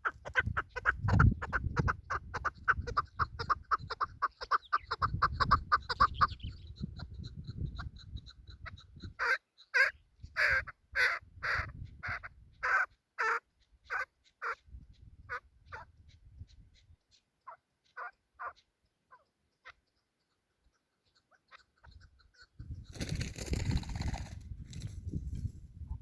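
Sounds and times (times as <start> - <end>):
partridge calling harsh notes: 0.0 - 15.8.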